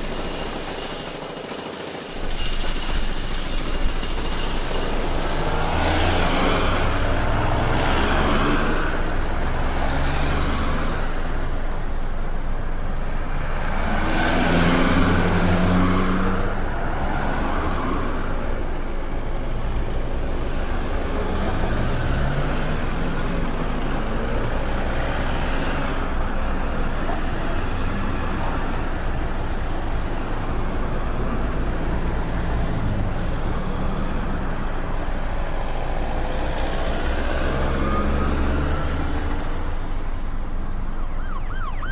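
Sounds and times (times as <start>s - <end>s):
traffic engine and tyre noise: 0.0s - 41.9s
loud vehicle passing: 5.2s - 11.4s, 13.6s - 18.4s, 20.2s - 40.2s
engine revving up: 5.3s - 11.1s.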